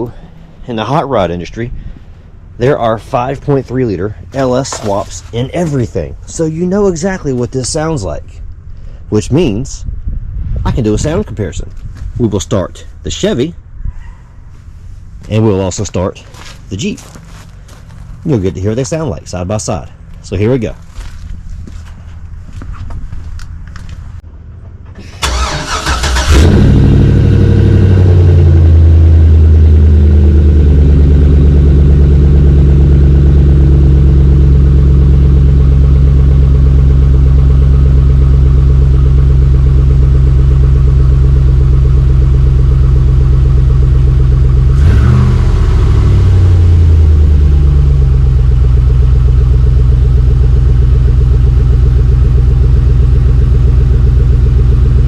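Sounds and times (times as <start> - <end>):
car engine starting and idling: 0.0 - 55.0
engine revving: 25.2 - 54.9.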